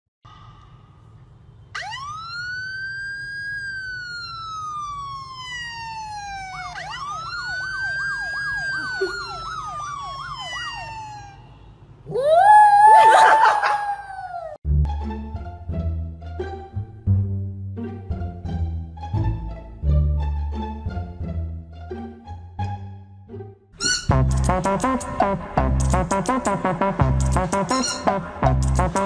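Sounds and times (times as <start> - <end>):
siren wailing: 1.8 - 14.6.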